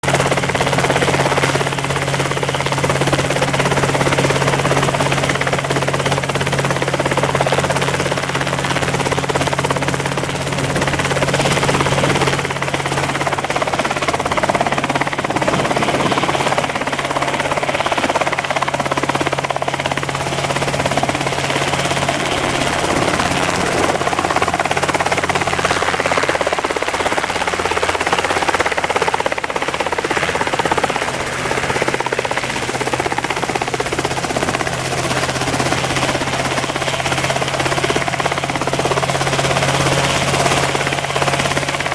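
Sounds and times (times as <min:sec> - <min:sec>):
helicopter engine and rotor drone: 0:00.0 - 0:41.9
wind noise on microphone: 0:06.7 - 0:39.0.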